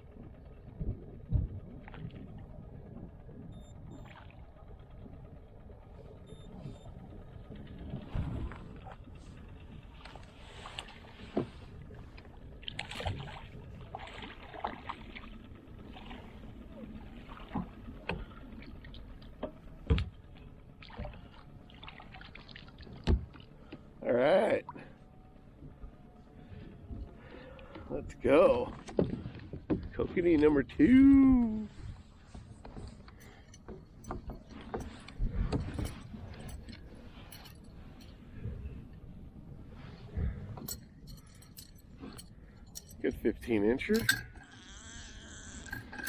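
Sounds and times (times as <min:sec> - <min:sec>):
fishing gear clicks and taps: 0:32.6 - 0:38.2, 0:40.6 - 0:44.6, 0:45.6 - 0:46.0.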